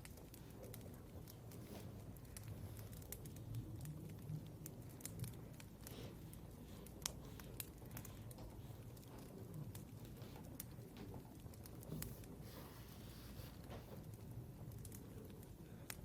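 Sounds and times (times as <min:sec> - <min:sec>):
small clicks taps and rustles: 0:00.0 - 0:12.4
low room hum: 0:00.0 - 0:16.0.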